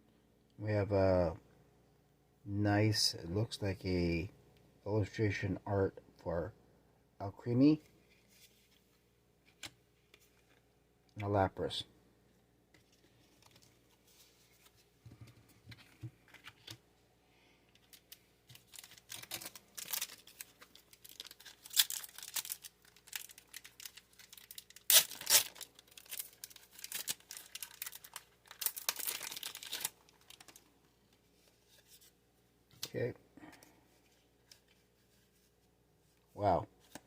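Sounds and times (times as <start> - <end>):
soft handling sounds: 7.4 - 11.5, 12.2 - 37.0
foil wrapper tearing and crinkling: 17.8 - 30.6.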